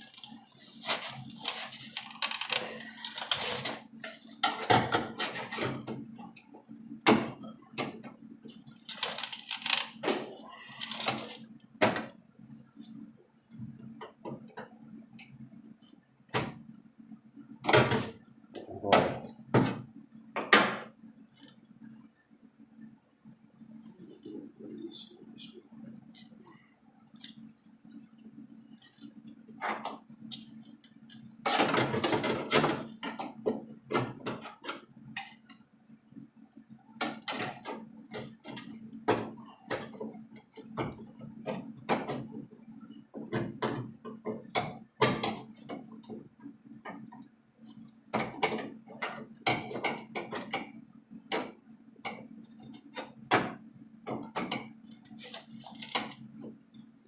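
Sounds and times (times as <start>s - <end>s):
steady low hum: 10.0s - 31.4s.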